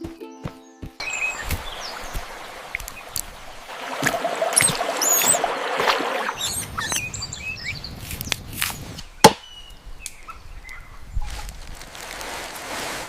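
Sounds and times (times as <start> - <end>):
small birds chirping: 0.1 - 11.6
sharp chopping knock: 9.2 - 9.5.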